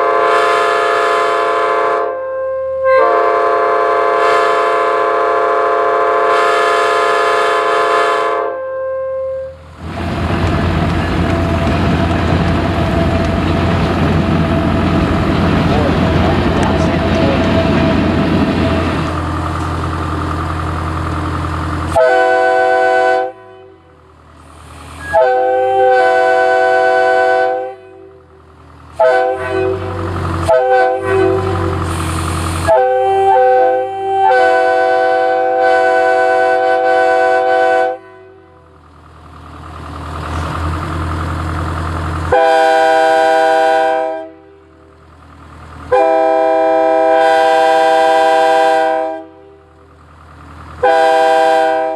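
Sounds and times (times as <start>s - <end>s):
locomotive air horn blasts: 0.0s - 9.7s, 21.9s - 24.1s, 25.0s - 28.4s, 29.0s - 38.8s, 42.3s - 44.9s, 45.9s - 49.8s, 50.8s - 51.9s.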